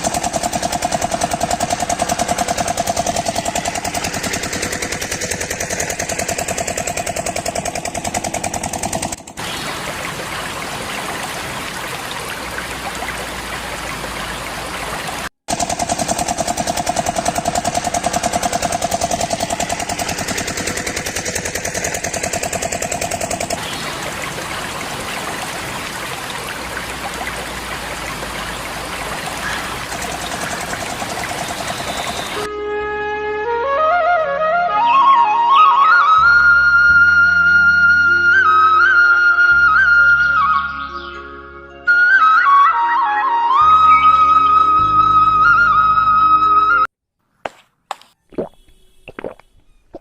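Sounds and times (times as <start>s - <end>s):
small engine rattling putter: 0.0s - 9.9s, 15.5s - 32.5s.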